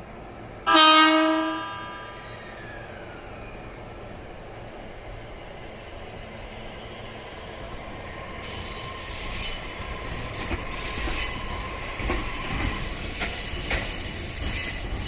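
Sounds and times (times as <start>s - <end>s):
train rolling past: 0.0s - 15.0s
high wheel squeal: 8.4s - 15.0s
wheels clacking over rail joints: 8.4s - 15.0s.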